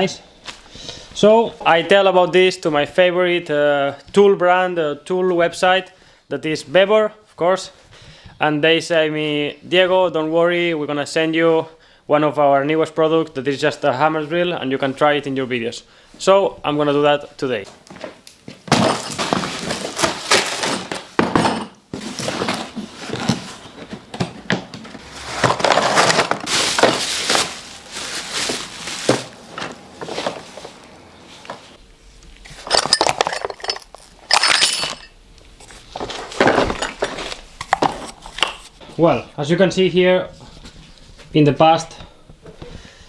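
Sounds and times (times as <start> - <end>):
hard objects clinking and knocking: 32.5 - 35.2, 36.2 - 38.6.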